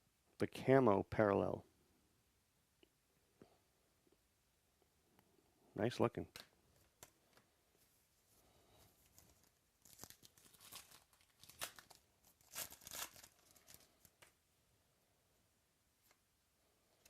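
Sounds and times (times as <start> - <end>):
foil wrapper crinkling and tearing: 9.0 - 14.3.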